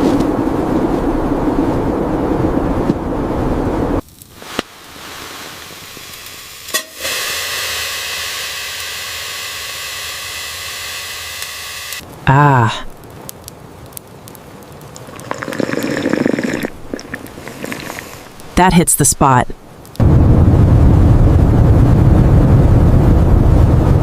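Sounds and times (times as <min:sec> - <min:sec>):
wind buffeting microphone: 0:00.0 - 0:04.0, 0:20.0 - 0:24.0
steady hiss: 0:04.2 - 0:12.2, 0:13.1 - 0:18.8.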